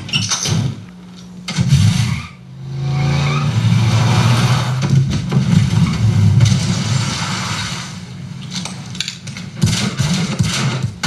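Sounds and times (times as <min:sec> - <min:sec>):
cartoon car engine revving: 0:01.5 - 0:08.1.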